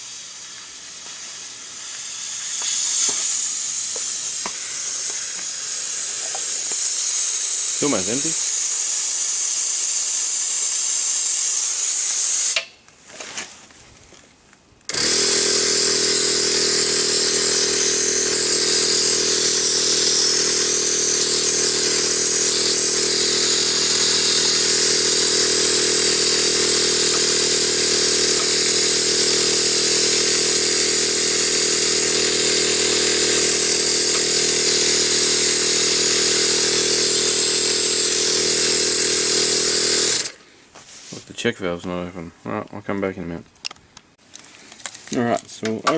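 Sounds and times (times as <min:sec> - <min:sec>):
compressed air hissing: 0:00.0 - 0:12.6
air compressor running: 0:00.0 - 0:12.7, 0:14.9 - 0:40.5.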